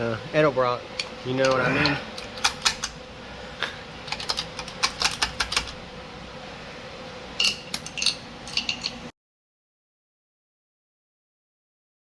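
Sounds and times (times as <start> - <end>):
faint steady hum: 0.0 - 9.1
sharp metallic clicks and clinks: 7.4 - 9.0.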